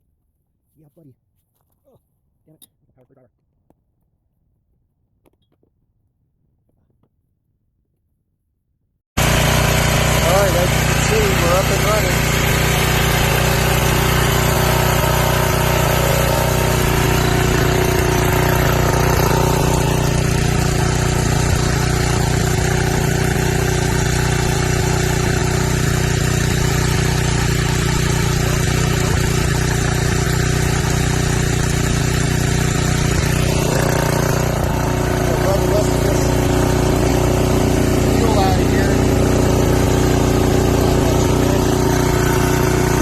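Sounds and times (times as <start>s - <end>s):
generator engine running: 9.2s - 43.0s.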